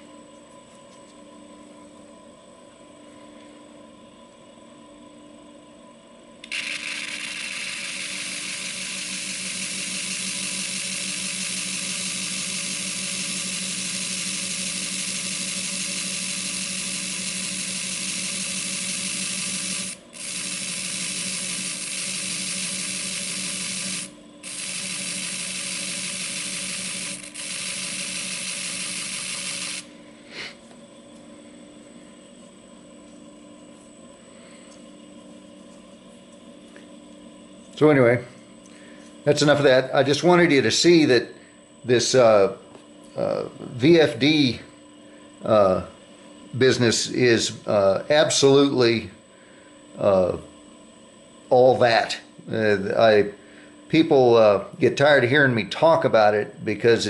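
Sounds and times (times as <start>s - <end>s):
machine humming: 6.4s - 41.1s.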